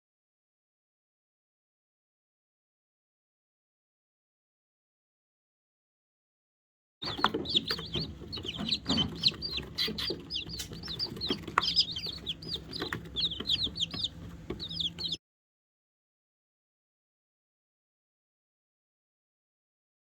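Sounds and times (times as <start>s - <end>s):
chicks peeping: 7.0s - 15.2s
faint low hum: 7.0s - 15.2s.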